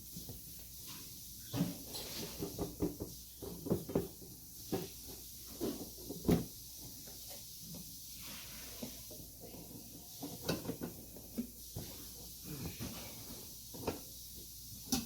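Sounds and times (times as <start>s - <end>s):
parts knocking and thumping: 1.5s - 7.3s.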